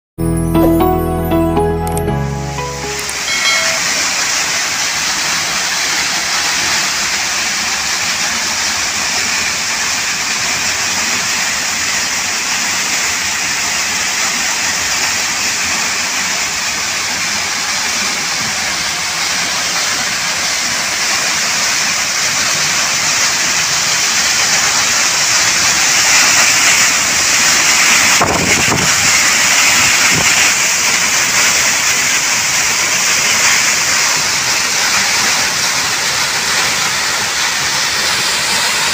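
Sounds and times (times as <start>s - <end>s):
waterfall roaring: 2.5s - 38.9s.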